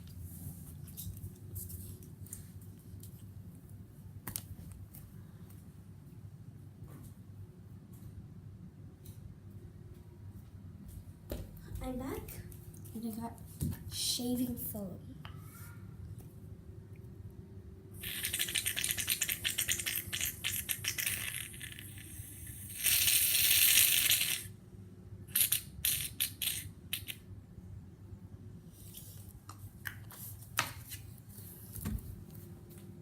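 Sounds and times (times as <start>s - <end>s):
aerosol can rattling: 18.0s - 24.5s.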